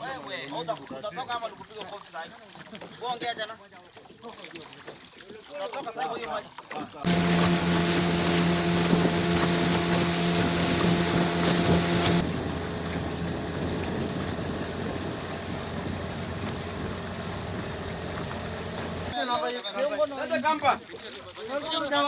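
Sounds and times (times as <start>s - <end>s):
wind: 0.0s - 22.0s
water noise: 3.9s - 22.0s
motorboat engine humming: 7.1s - 19.2s.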